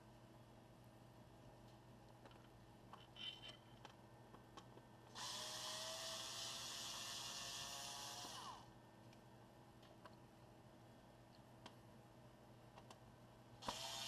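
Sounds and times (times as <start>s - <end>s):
electric screwdriver motor whirring: 5.2s - 8.6s, 13.6s - 14.0s.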